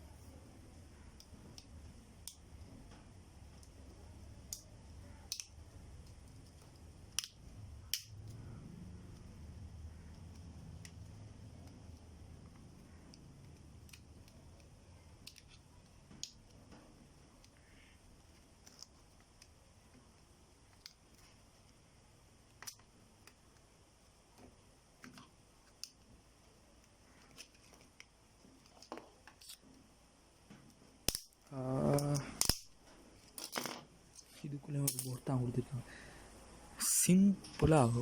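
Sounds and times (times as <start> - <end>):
plastic casing clicks and snaps: 31.1 - 32.8.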